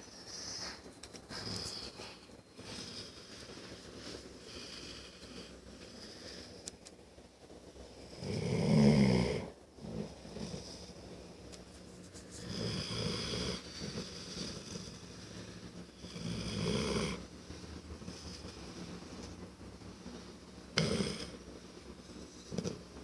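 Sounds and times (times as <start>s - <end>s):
quiet breathing: 0.0s - 23.0s
person snoring: 8.2s - 10.9s, 12.4s - 15.3s, 16.0s - 17.2s, 20.8s - 21.4s.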